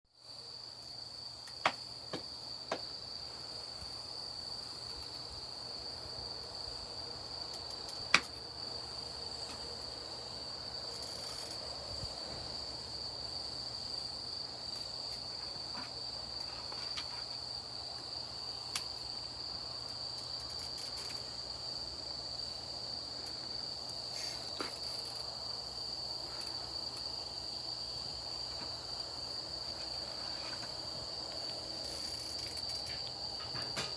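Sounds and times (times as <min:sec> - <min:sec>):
insects trilling: 0:00.2 - 0:33.9
campfire crackling and popping: 0:07.5 - 0:08.5.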